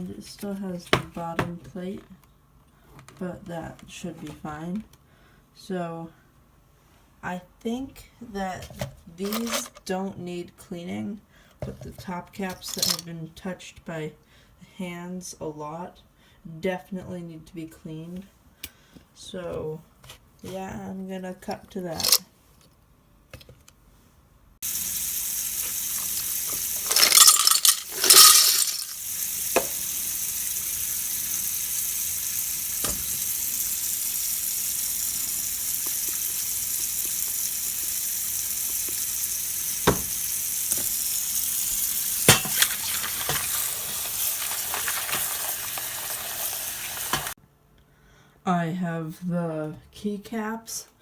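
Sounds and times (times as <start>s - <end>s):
water running into a bowl: 24.6s - 47.4s
plastic keycaps clattering: 26.9s - 28.9s.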